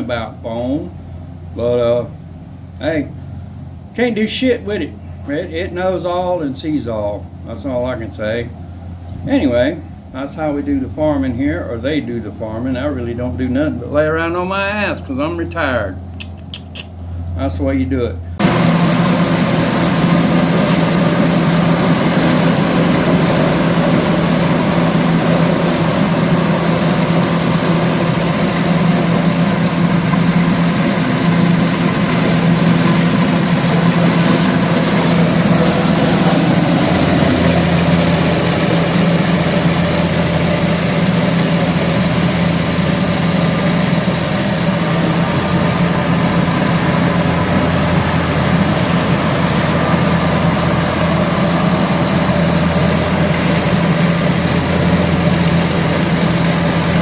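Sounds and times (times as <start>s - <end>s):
engine running steadily: 0.0s - 57.0s
deep low hum: 18.2s - 57.0s.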